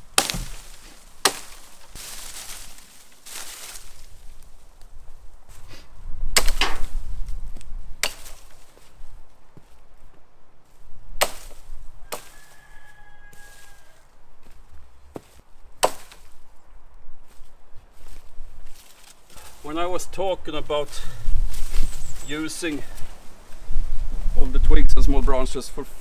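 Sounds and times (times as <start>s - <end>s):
axe chopping tree trunk: 0.0s - 4.0s, 6.4s - 7.1s, 8.0s - 8.8s, 11.2s - 12.6s, 15.1s - 16.4s.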